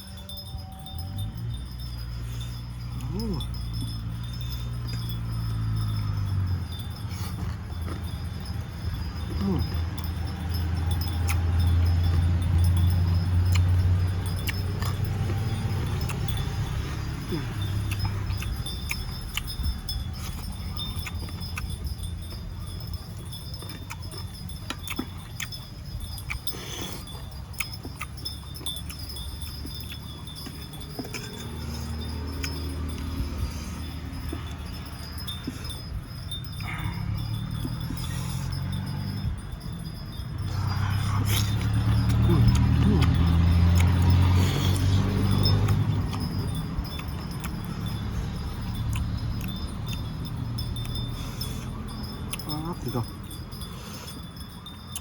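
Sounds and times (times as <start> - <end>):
high ringing tone: 0.0 - 55.0
crunchy chewing: 1.2 - 55.0.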